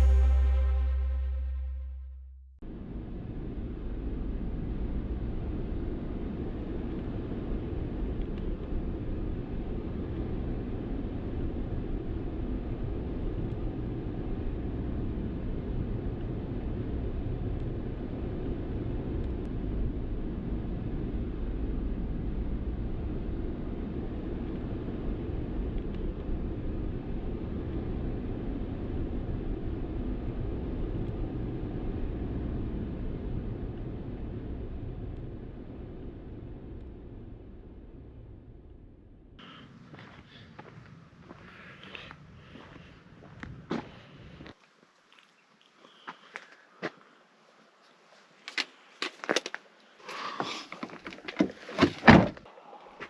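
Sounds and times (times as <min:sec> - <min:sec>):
vehicle driving rumble: 0:00.0 - 0:08.1.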